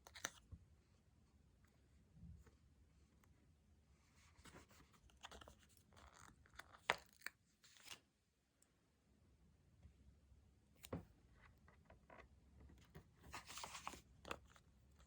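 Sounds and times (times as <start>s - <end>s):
paper rustling: 13.3s - 14.5s.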